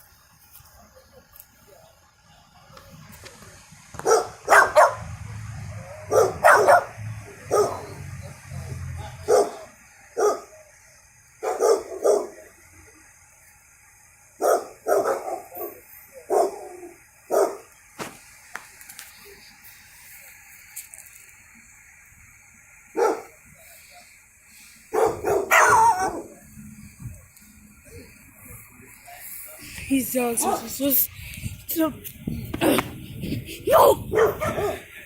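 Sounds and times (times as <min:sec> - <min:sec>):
dog barking: 0:04.0 - 0:05.1, 0:06.0 - 0:08.0, 0:09.2 - 0:10.6, 0:11.4 - 0:12.4, 0:14.4 - 0:17.7, 0:23.0 - 0:23.4, 0:24.9 - 0:26.4, 0:30.4 - 0:30.8, 0:33.7 - 0:34.9.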